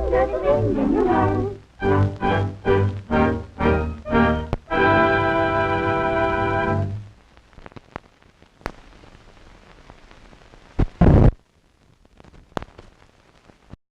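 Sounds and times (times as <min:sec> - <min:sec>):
organ music: 0:00.0 - 0:07.1
film soundtrack hiss: 0:00.0 - 0:13.8
loud crackling burst: 0:00.0 - 0:13.8
clicks and pops: 0:07.0 - 0:08.8.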